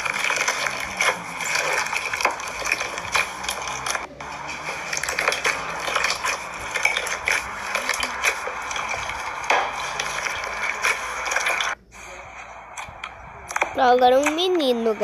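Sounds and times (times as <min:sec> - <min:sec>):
slime crackling and popping: 0:00.0 - 0:04.1.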